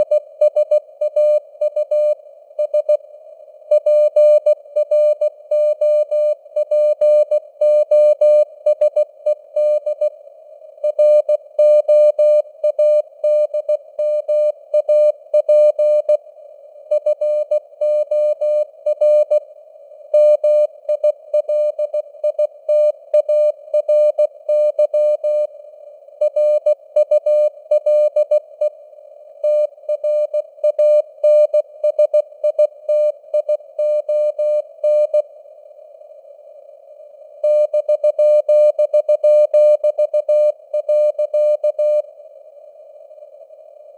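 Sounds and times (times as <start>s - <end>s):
faint radio hiss: 0.0s - 43.9s.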